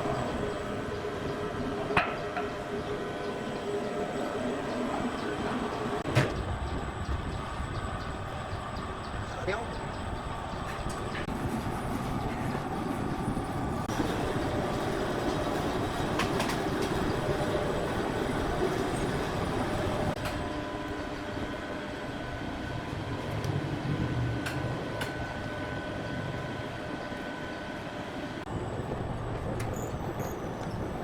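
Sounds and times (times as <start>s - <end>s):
heavy machinery running: 10.4s - 29.6s.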